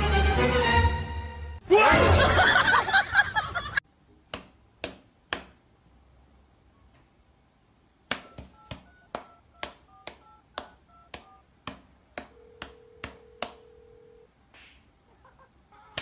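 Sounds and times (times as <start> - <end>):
keypad taps with touch-tone beeps: 8.1 - 11.4, 12.2 - 13.8.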